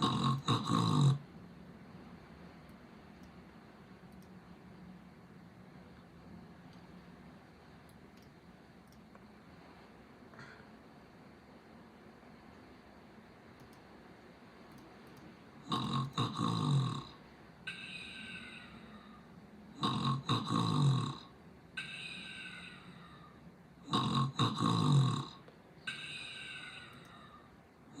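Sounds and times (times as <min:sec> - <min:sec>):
loud rasping snores: 0:00.0 - 0:01.2, 0:15.7 - 0:18.6, 0:19.8 - 0:22.8, 0:23.8 - 0:26.8.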